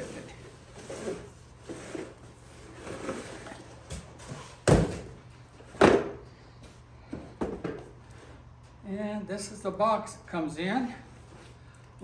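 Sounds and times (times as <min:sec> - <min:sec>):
cardboard knocking and rustling: 0:04.2 - 0:05.2.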